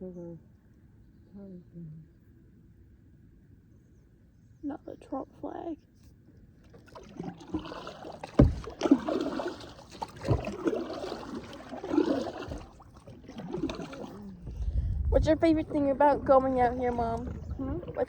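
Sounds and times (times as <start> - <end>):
paddle splashing through water: 6.6 - 18.0
sharp thumps: 8.4 - 8.8.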